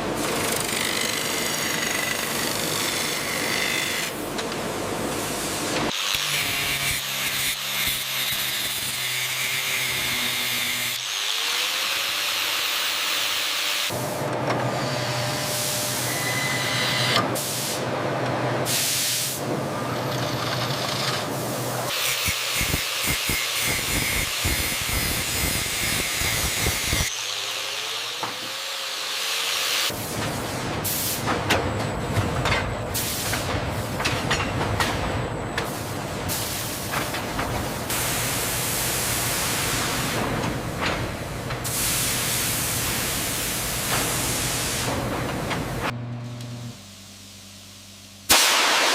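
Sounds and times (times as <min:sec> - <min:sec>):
power tools hissing and rasping: 0:05.9 - 0:14.0, 0:21.9 - 0:30.0
steady machine hiss: 0:41.6 - 0:44.9.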